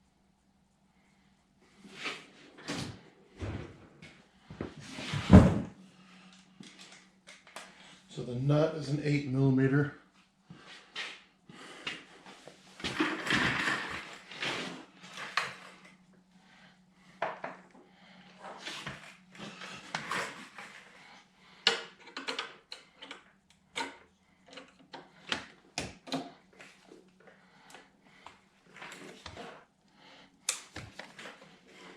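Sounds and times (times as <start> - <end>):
faint steady hum: 0.0 - 31.9.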